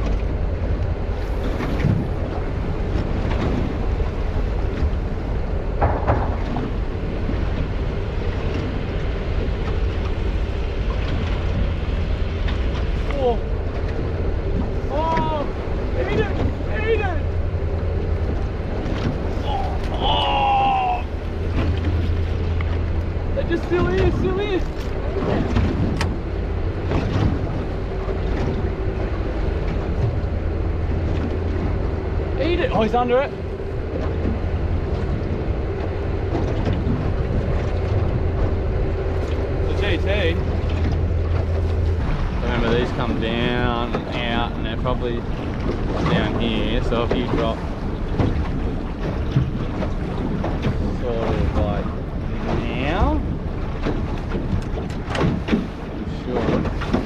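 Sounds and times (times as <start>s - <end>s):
boat motor droning: 0.0s - 57.0s
water rushing past hull: 0.0s - 57.0s
wind buffeting microphone: 0.0s - 57.0s
short knocks: 5.8s - 6.7s.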